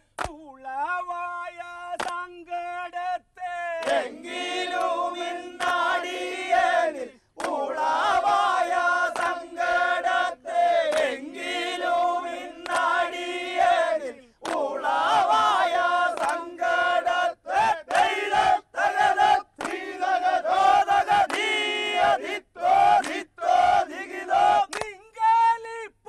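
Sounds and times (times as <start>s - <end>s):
men chanting rhythmically: 0.2s - 25.7s.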